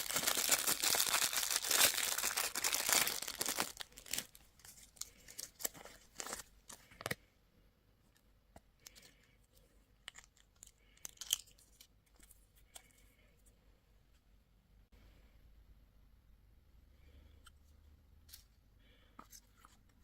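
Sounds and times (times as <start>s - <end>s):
plastic packaging crinkling and tearing: 0.0s - 7.2s, 10.1s - 11.9s.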